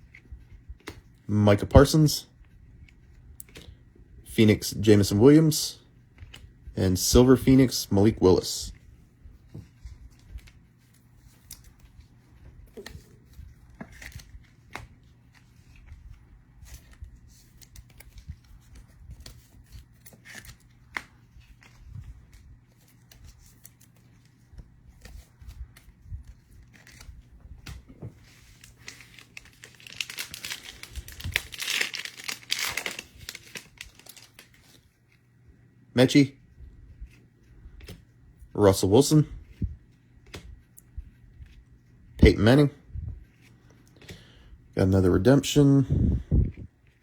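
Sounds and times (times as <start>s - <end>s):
trading cards handled: 0.0s - 3.8s, 4.4s - 35.3s
card wrapper torn open crinkling: 28.4s - 34.8s.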